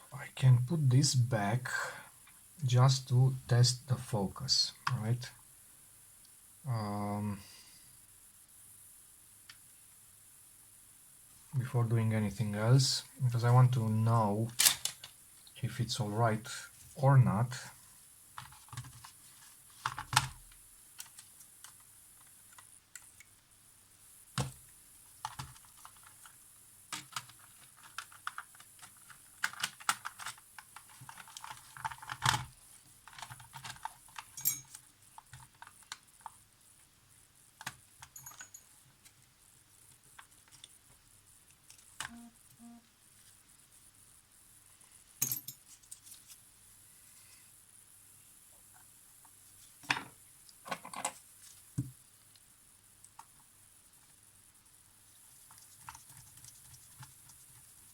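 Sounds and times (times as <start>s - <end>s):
small parts clicking and clattering: 25.2s - 36.4s, 37.6s - 39.2s, 45.2s - 46.4s, 49.8s - 51.2s.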